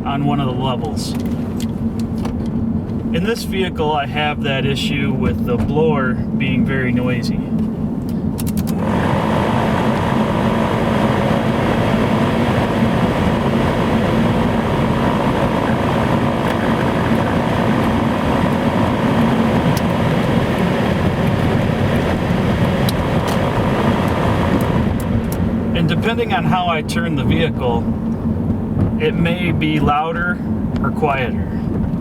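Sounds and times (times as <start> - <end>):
blower motor fan running: 7.4 - 29.6
blower motor whine: 8.0 - 26.4.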